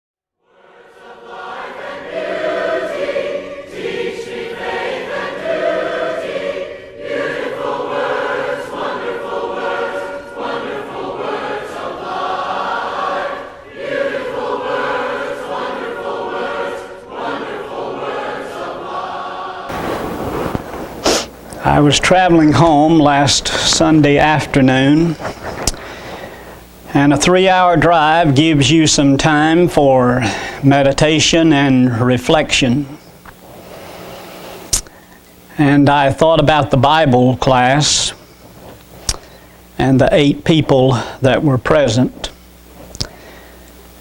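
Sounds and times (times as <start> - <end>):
choir singing in harmony: 0.4 - 25.3.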